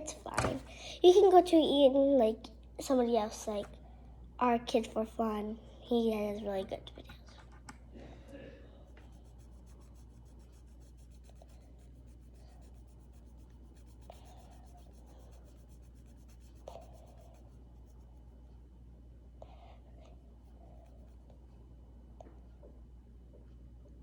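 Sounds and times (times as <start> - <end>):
low steady hum: 0.0 - 24.0
drawing tool scratching paper: 8.9 - 18.2.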